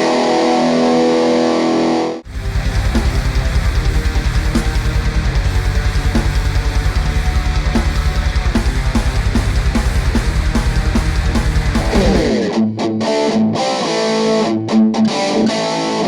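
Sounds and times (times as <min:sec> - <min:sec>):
distorted electric guitar riff: 0:00.0 - 0:16.0
drum backing with kick drum: 0:02.3 - 0:12.4.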